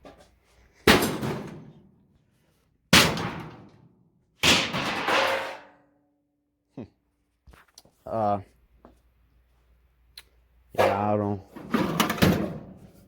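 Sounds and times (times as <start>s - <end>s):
metal toolbox bangs: 0.8s - 1.8s, 2.9s - 3.8s, 4.4s - 5.8s, 10.8s - 12.8s.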